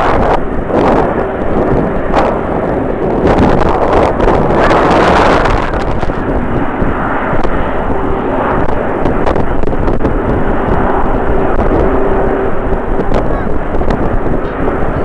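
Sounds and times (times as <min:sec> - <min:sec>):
jet engines running: 0:00.0 - 0:15.0
wind rumbling on microphone: 0:00.0 - 0:15.0.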